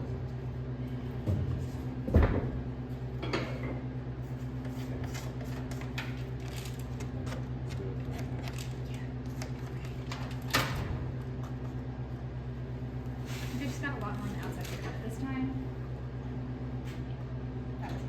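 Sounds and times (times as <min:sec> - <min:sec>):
low electrical hum: 0:00.0 - 0:18.0.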